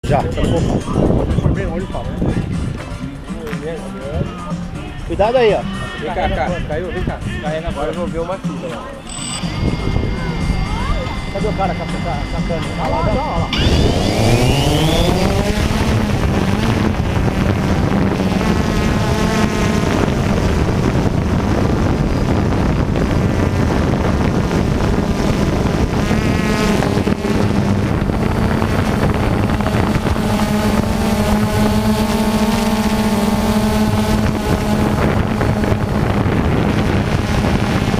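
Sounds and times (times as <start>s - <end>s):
remote control car motors buzzing: 9.0s - 37.9s.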